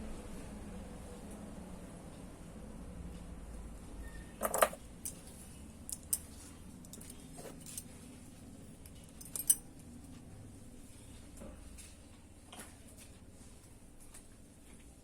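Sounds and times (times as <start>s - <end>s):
metallic clinks and taps: 4.4s - 5.3s, 5.9s - 7.9s, 8.8s - 9.7s.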